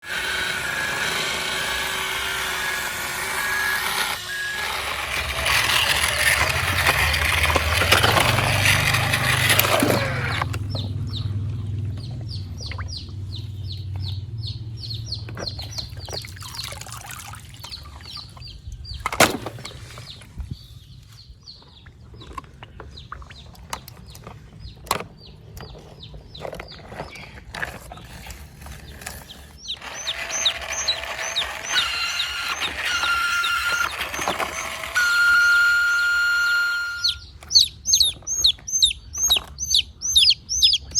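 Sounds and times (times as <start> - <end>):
rumbling motor noise: 0.0 - 39.9
baby bird cheeping: 12.0 - 16.4, 29.3 - 34.8, 36.0 - 40.9.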